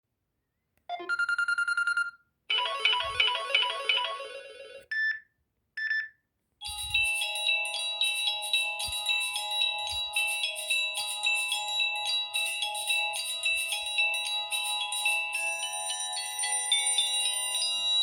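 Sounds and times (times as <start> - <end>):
short repeating ringtone melody: 0.9 - 5.2
bell-like tune: 6.6 - 18.0.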